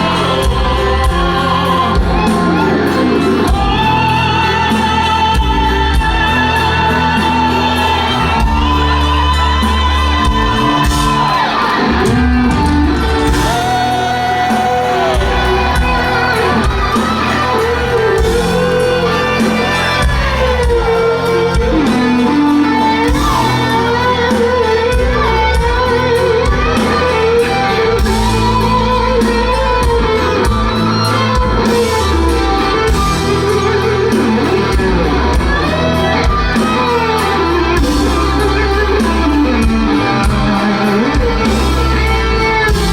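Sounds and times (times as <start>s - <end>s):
operatic singing voice: 0.0s - 30.4s
rock band playing: 0.0s - 42.9s.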